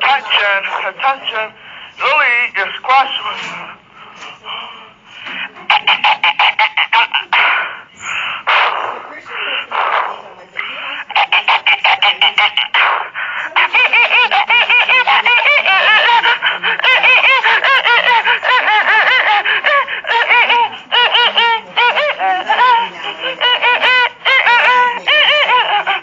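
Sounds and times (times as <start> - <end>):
child laughing: 5.6 - 7.8, 8.5 - 26.0.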